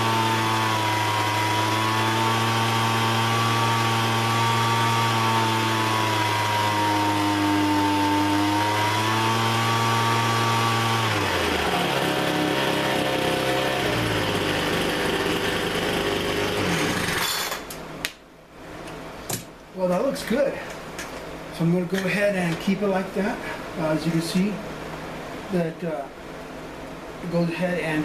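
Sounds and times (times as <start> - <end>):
leaf blower engine running: 0.0 - 17.6.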